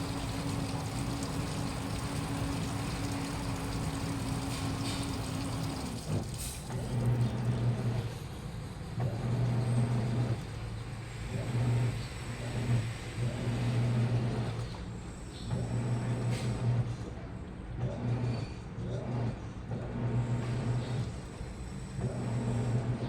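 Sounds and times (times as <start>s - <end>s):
washing machine drum turning: 0.0s - 8.0s.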